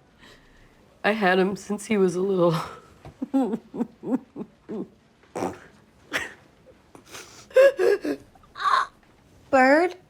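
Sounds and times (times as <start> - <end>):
woman sobbing: 2.5 - 5.0, 7.0 - 9.0.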